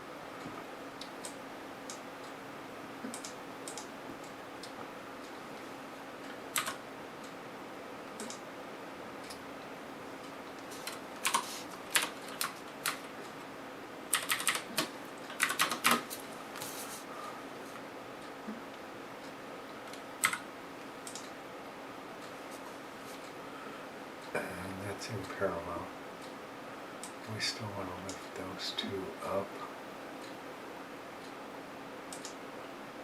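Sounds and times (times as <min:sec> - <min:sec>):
keyboard typing: 0:03.0 - 0:03.9, 0:06.5 - 0:06.8, 0:08.2 - 0:08.4, 0:10.5 - 0:13.1, 0:14.1 - 0:16.2, 0:19.9 - 0:20.4, 0:21.0 - 0:21.3, 0:32.1 - 0:32.4.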